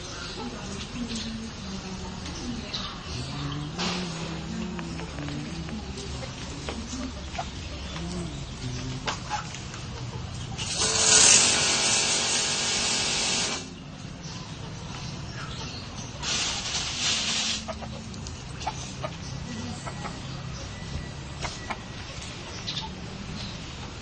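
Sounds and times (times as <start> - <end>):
distant chickens: 0.0 - 24.0
hissing spray: 10.6 - 13.7, 16.2 - 17.7.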